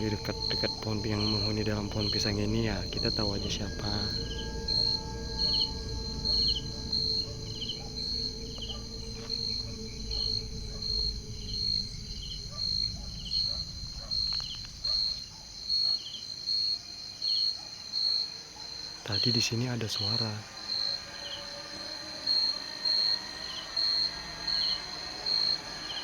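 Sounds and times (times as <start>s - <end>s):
low rumble: 0.0s - 15.7s
insects chirping: 0.0s - 26.0s.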